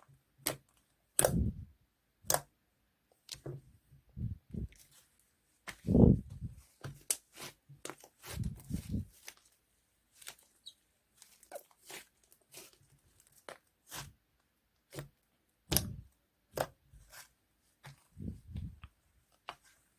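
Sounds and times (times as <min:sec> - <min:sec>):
slime squishes: 0:00.3 - 0:03.5, 0:04.2 - 0:19.9
sticky slime pops and clicks: 0:01.2 - 0:01.6, 0:02.2 - 0:02.5, 0:15.7 - 0:16.7.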